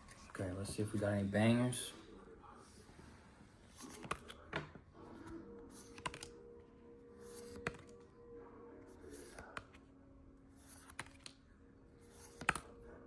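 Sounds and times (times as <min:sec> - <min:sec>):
trading cards clicking and snapping: 0:05.8 - 0:06.4, 0:10.6 - 0:11.4, 0:12.2 - 0:12.7.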